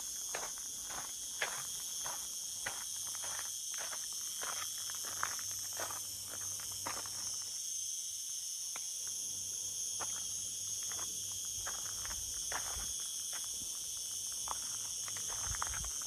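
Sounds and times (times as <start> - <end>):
insects trilling: 0.0 - 16.0
footsteps: 0.2 - 7.4, 10.8 - 16.0.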